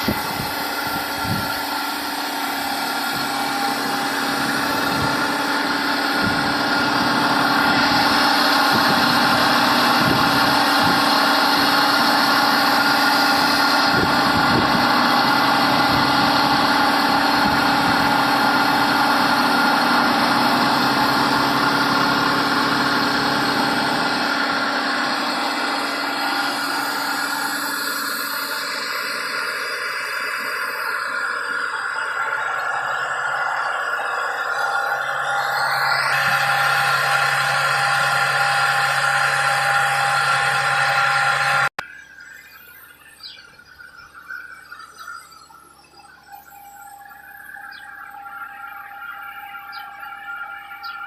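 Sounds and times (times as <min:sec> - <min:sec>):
industrial blower humming: 0:00.0 - 0:41.8, 0:46.2 - 0:51.0.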